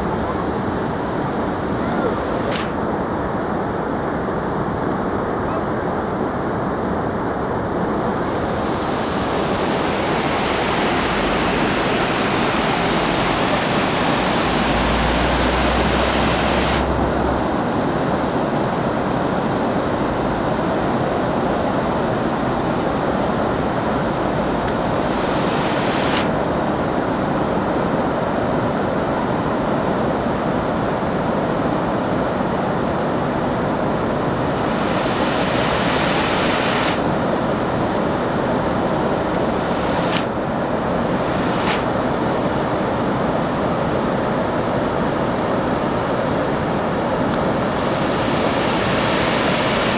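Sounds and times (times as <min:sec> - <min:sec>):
waterfall rushing: 0:08.2 - 0:18.0, 0:23.5 - 0:26.9, 0:32.8 - 0:42.9, 0:46.5 - 0:49.9.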